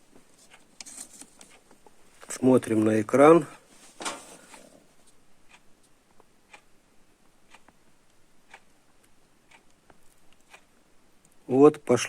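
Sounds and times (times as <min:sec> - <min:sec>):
faint regular ticking: 0:04.5 - 0:12.0.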